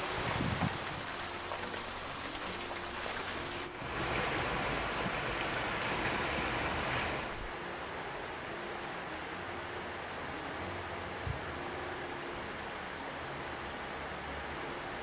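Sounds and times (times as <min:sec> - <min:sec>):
rain: 0:00.0 - 0:15.0
river water flowing: 0:00.0 - 0:15.0.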